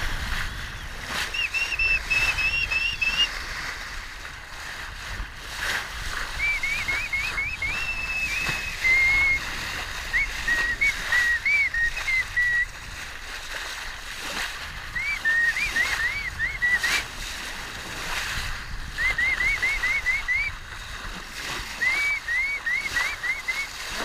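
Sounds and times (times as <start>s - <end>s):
water washing along hull: 0.0s - 24.0s
quick chirping whistles: 0.8s - 3.3s, 6.3s - 9.5s, 10.1s - 12.7s, 14.9s - 17.0s, 18.9s - 20.6s, 21.8s - 23.8s.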